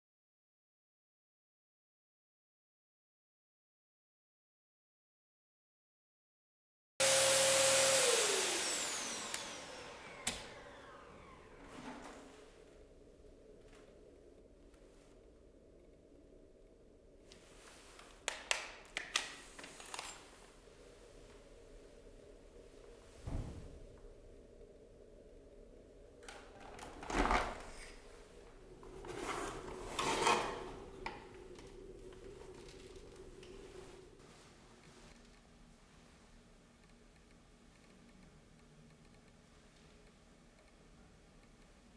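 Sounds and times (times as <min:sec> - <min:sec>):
vacuum cleaner motor winding down: 0:07.0 - 0:12.9, 0:26.2 - 0:34.2
plastic vacuum parts scraping: 0:26.2 - 0:28.1, 0:28.8 - 0:33.8.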